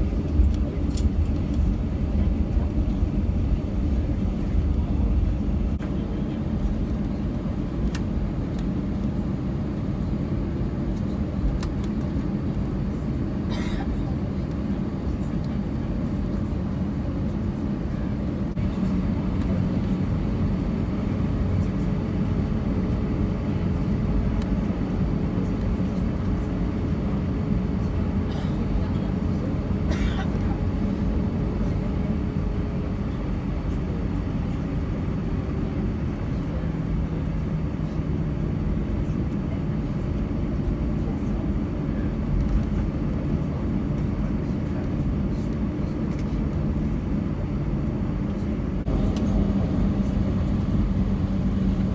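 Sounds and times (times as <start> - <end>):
airplane cabin rumble: 0.0 - 51.9
faint steady hum: 48.9 - 51.9.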